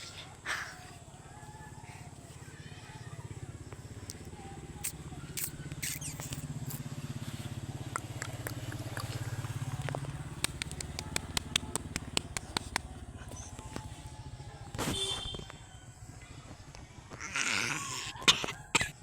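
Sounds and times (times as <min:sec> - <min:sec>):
sharp clicks: 0:04.8 - 0:06.8, 0:07.9 - 0:13.9.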